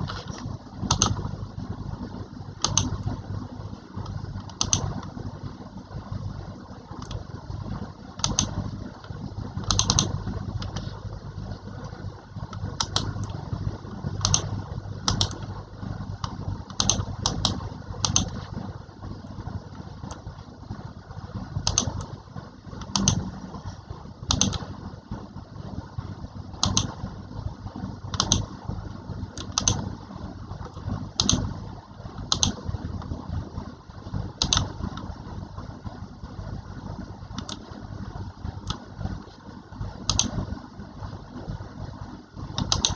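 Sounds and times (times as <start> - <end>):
steady low hum: 0.0 - 42.9
computer keys clicking: 0.1 - 1.3, 2.6 - 3.2, 3.9 - 5.2, 6.9 - 7.3, 8.2 - 11.0, 11.7 - 15.5, 16.2 - 18.6, 21.6 - 22.2, 22.8 - 23.6, 24.2 - 24.7, 26.6 - 27.0, 28.1 - 28.5, 29.3 - 29.9, 30.6 - 31.5, 32.2 - 33.1, 34.3 - 35.2, 37.3 - 37.8, 38.6 - 38.9, 40.0 - 40.5, 42.5 - 42.9.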